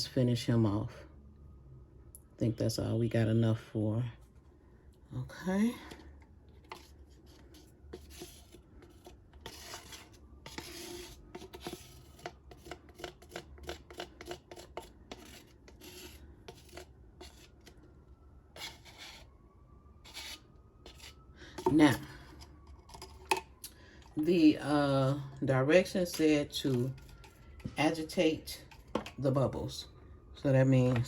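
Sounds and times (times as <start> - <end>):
stick scraping a cup: 6.6 - 17.8, 18.6 - 19.3, 20.1 - 24.5, 25.8 - 29.6.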